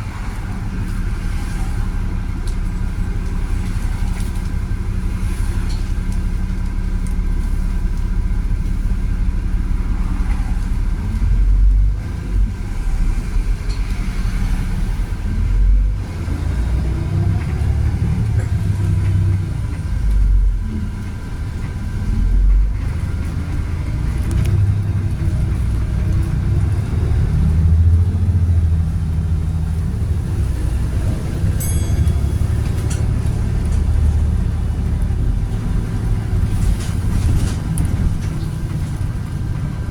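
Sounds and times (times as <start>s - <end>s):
bus engine rumbling: 0.0s - 39.9s.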